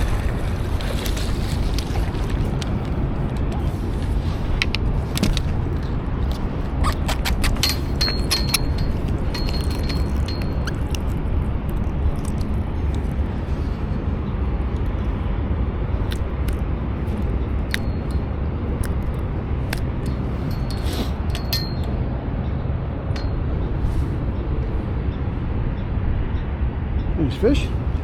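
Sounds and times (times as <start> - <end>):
steady low rumble: 0.0 - 28.0
light metallic clicks and clinks: 7.4 - 11.2, 20.0 - 22.0.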